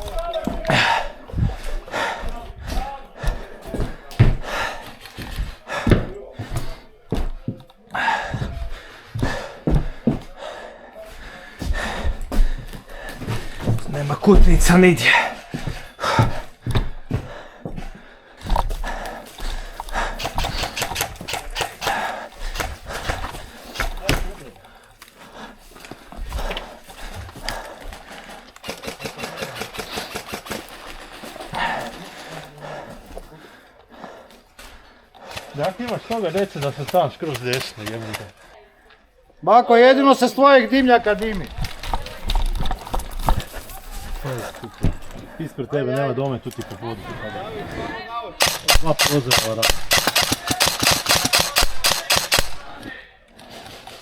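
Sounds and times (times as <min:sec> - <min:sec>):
rustling: 0:11.2 - 0:38.6, 0:40.5 - 0:45.6
airsoft gun full-auto burst: 0:28.6 - 0:30.8, 0:48.4 - 0:52.7
single sharp gun clicks: 0:48.4 - 0:52.6.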